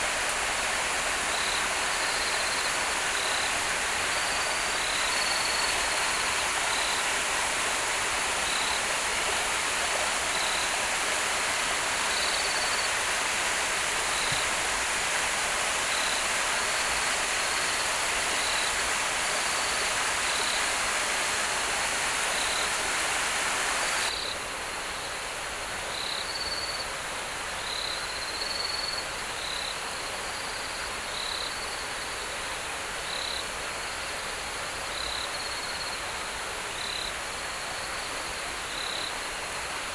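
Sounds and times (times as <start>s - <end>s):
rushing water: 0.0s - 39.9s
insects chirping: 1.2s - 7.6s, 8.4s - 9.0s, 10.2s - 10.9s, 11.8s - 14.6s, 25.9s - 26.9s, 27.6s - 39.9s.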